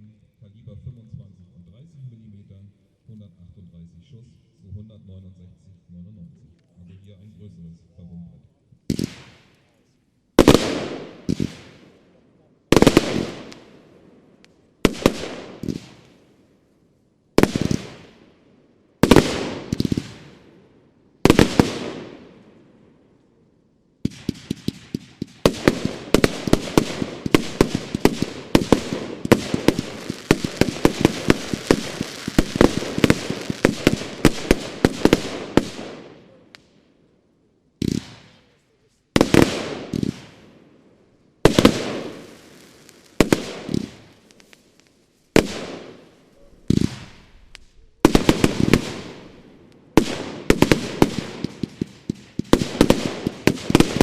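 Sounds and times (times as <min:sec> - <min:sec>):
firework bangs echoing: 0:08.9 - 0:09.6, 0:10.4 - 0:12.0, 0:12.7 - 0:16.3, 0:17.4 - 0:18.4, 0:19.0 - 0:22.7, 0:24.0 - 0:36.8, 0:37.8 - 0:38.5, 0:39.2 - 0:40.8, 0:41.4 - 0:54.0
rapid-fire firework volley: 0:08.9 - 0:09.8, 0:10.4 - 0:12.0, 0:12.7 - 0:14.0, 0:14.8 - 0:16.2, 0:17.4 - 0:18.3, 0:19.0 - 0:20.6, 0:21.2 - 0:22.5, 0:24.0 - 0:36.7, 0:37.8 - 0:40.6, 0:41.4 - 0:54.0.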